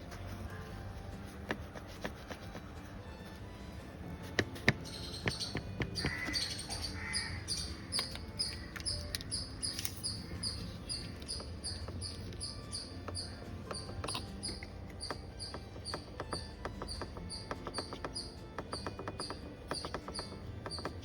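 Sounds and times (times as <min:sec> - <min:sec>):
sharp clicks and taps: 0:04.2 - 0:21.0.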